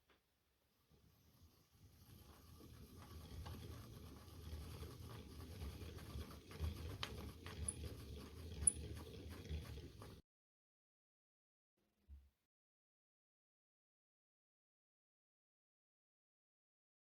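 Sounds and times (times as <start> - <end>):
sewing machine rumble: 2.0 - 10.2.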